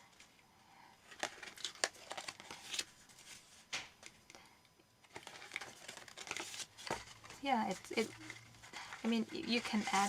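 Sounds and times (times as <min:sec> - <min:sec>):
paper rustling: 0:05.0 - 0:10.0.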